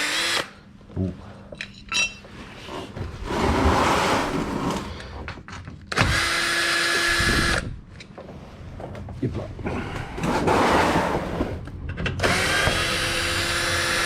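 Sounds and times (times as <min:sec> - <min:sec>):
drill motor whine: 0:06.0 - 0:07.7, 0:12.2 - 0:14.0.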